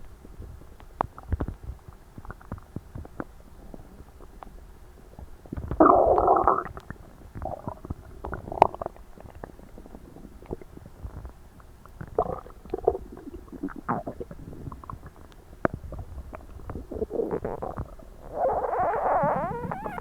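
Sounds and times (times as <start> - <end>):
stomach gurgling: 0.4 - 20.0.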